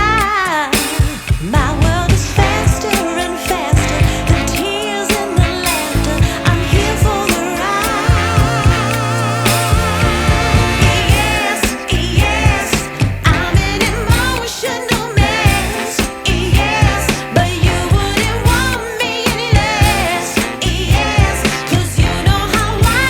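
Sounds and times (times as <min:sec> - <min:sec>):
song with ornamented singing: 0:00.0 - 0:23.0
steady beat: 0:01.4 - 0:14.4.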